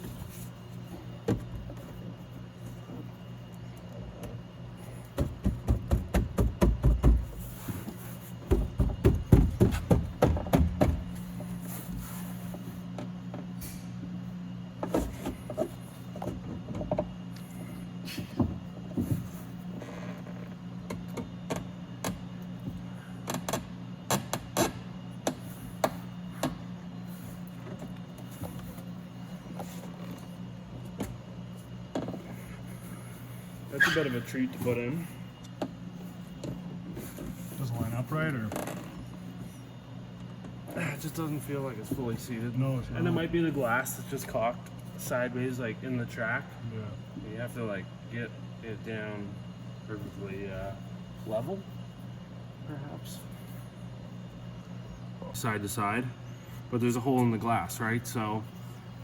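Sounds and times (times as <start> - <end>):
steady low hum: 0.0 - 59.0
rapid clicking and knocking: 5.2 - 7.3, 8.4 - 11.0.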